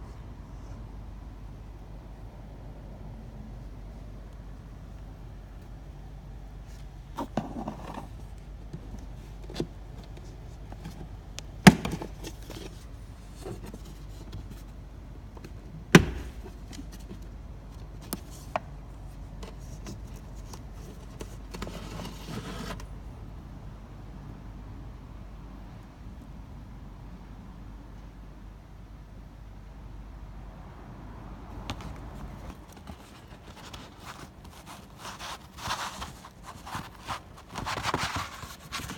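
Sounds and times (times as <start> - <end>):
rustling: 31.7 - 38.9.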